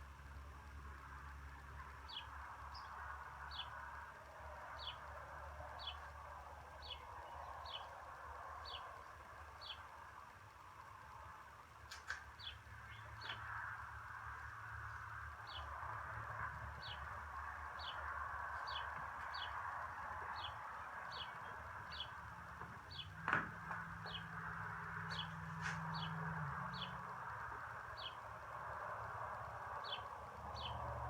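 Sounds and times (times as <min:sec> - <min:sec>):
bird chirping: 0:16.8 - 0:23.2, 0:24.0 - 0:24.4, 0:25.0 - 0:27.0, 0:29.8 - 0:30.8.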